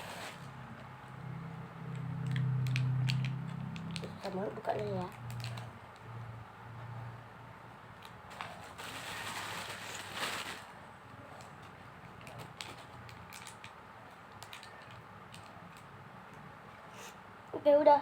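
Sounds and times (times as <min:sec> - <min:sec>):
packaging clicks and crackles: 0:01.9 - 0:06.1, 0:11.4 - 0:15.9
packaging rustling: 0:08.3 - 0:10.8.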